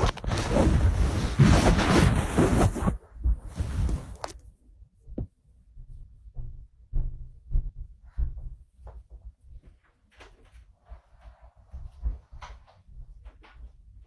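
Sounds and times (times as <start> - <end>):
rushing noise on microphone: 0.0 - 4.3.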